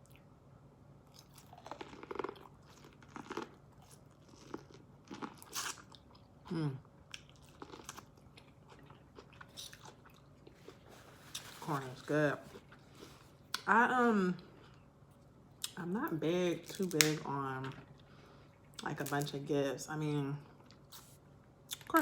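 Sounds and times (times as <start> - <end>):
person chewing corn on the cob: 1.0 - 11.6.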